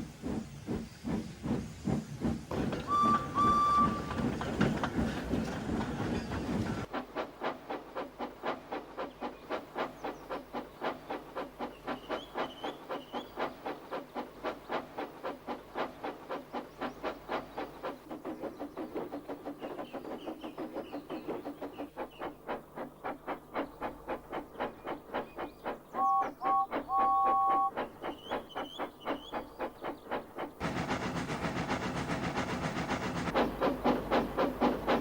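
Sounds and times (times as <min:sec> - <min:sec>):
wagons clacking over rail joints: 0:00.2 - 0:35.0
high squeaks from wagons: 0:02.7 - 0:04.8.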